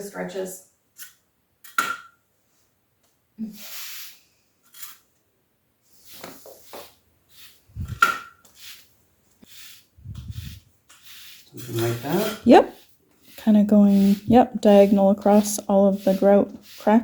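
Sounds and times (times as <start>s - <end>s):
grout scraping on tile: 3.6s - 5.1s, 5.9s - 17.0s.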